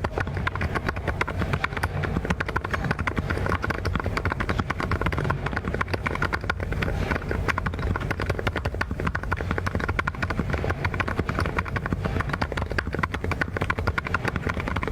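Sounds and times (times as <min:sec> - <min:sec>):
mechanical keyboard typing: 0:00.0 - 0:14.9.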